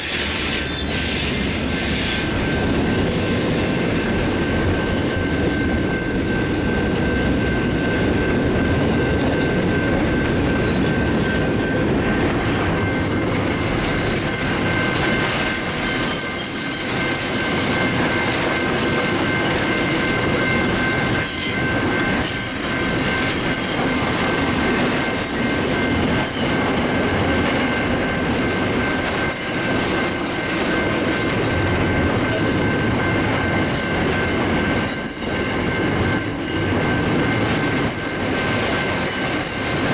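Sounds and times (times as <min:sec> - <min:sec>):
train rumbling on rails: 0:00.0 - 0:39.9.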